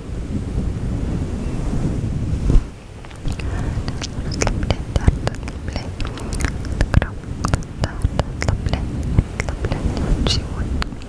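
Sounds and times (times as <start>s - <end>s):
low rumble: 0.0s - 11.0s
wet lip and tongue clicks: 3.0s - 11.0s.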